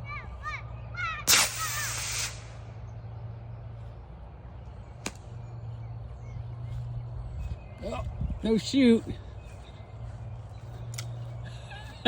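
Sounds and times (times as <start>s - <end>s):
steady low hum: 0.0s - 12.0s
ejection charge sharp pop: 1.3s - 2.5s
rocket motor burning with loud hiss: 1.3s - 2.6s.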